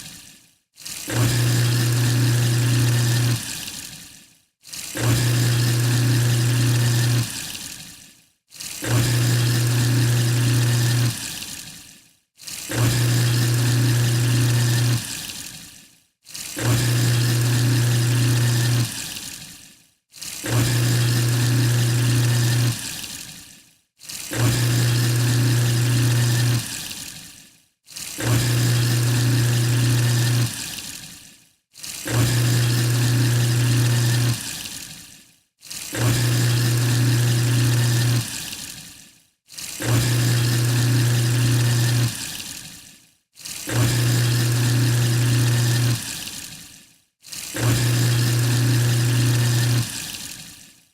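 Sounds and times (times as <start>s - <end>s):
garbage disposal motor humming: 1.1s - 3.4s, 5.0s - 7.3s, 8.8s - 11.1s, 12.7s - 15.0s, 16.6s - 18.9s, 20.5s - 22.8s, 24.3s - 26.7s, 28.2s - 30.6s, 32.1s - 34.5s, 36.0s - 38.3s, 39.8s - 42.2s, 43.7s - 46.0s, 47.6s - 50.0s.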